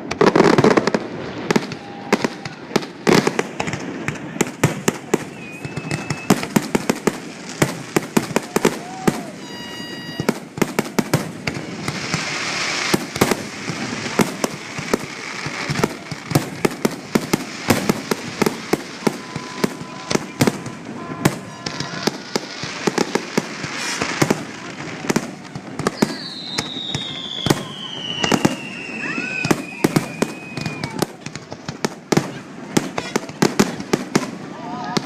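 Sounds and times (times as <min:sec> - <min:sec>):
fireworks crackling: 0:00.0 - 0:35.0
firework whistle falling in pitch: 0:05.2 - 0:06.4, 0:08.6 - 0:10.4, 0:19.0 - 0:22.3, 0:25.9 - 0:31.1.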